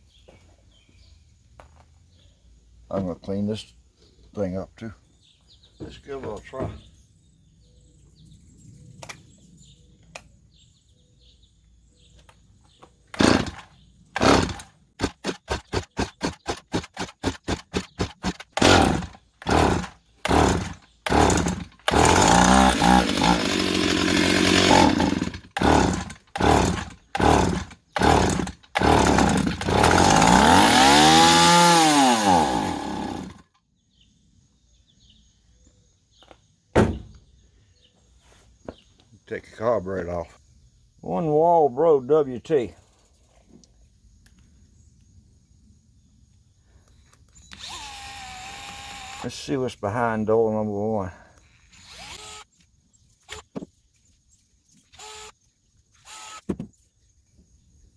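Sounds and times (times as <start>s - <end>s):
chainsaw starting and sputtering: 13.1s - 33.5s, 47.6s - 49.5s, 51.7s - 52.6s, 54.9s - 55.4s, 56.0s - 56.6s.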